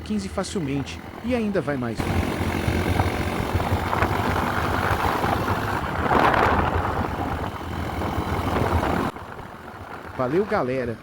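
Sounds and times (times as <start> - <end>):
motorcycle engine at speed: 0.0 - 11.0
wind noise on microphone: 2.7 - 10.5.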